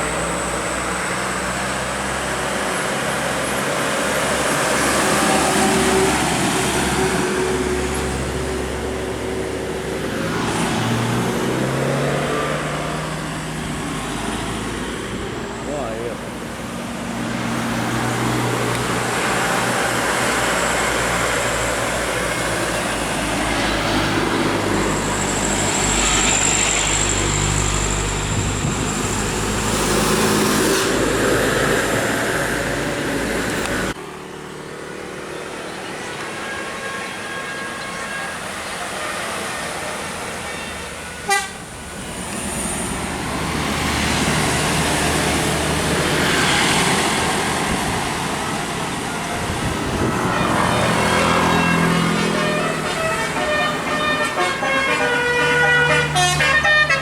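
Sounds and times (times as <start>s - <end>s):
heavy vehicles passing: 0.0s - 57.0s
vehicle horn toots: 40.5s - 41.6s, 49.2s - 57.0s.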